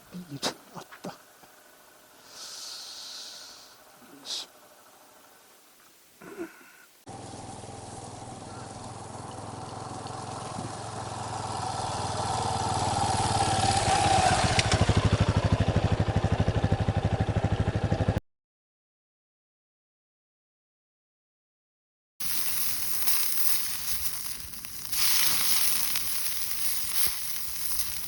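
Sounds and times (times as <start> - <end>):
single-cylinder engine running: 7.1 - 18.2.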